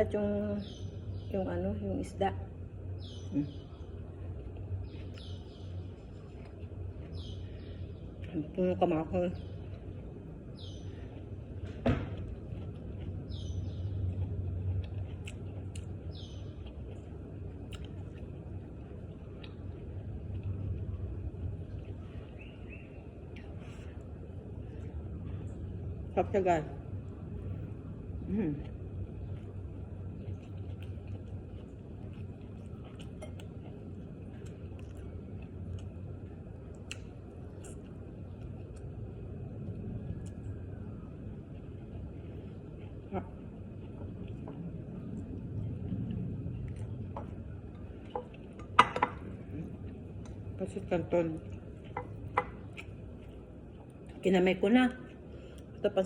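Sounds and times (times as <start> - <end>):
low hum: 0.0 - 56.0
small bird chirping: 3.0 - 4.0, 4.8 - 8.3, 10.5 - 11.2, 13.2 - 14.2, 15.3 - 17.1, 22.1 - 23.2
person chewing and eating: 3.0 - 8.3, 9.6 - 22.6, 27.1 - 50.6, 51.4 - 54.2.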